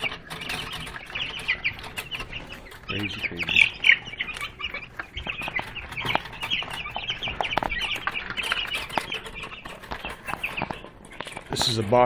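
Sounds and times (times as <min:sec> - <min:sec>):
chicks peeping: 0:00.0 - 0:12.0
sharp taps: 0:03.6 - 0:11.5.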